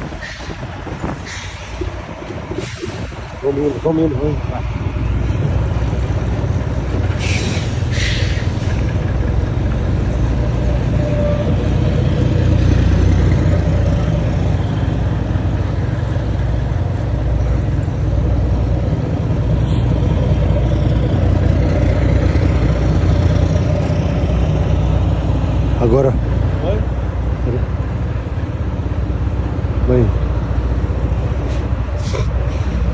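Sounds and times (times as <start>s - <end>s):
truck diesel engines rumbling: 0.0s - 32.9s
air hiss: 7.2s - 8.7s.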